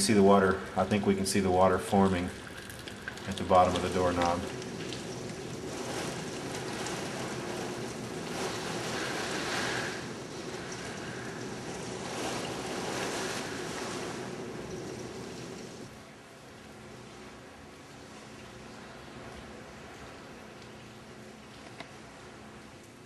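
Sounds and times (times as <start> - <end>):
driving rain: 0.0 - 22.6
howling wind: 4.5 - 15.9.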